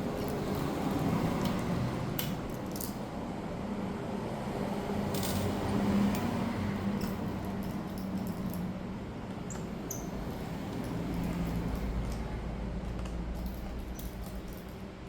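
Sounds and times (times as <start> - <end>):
light metal handling sounds: 0.1 - 3.0, 5.1 - 14.9.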